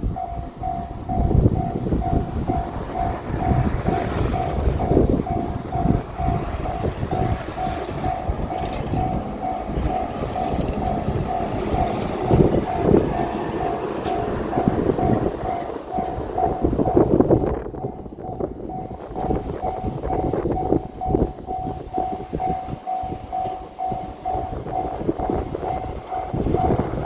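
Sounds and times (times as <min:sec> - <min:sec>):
diesel train rumbling past: 0:00.0 - 0:27.0
level crossing bell ringing: 0:00.1 - 0:17.1.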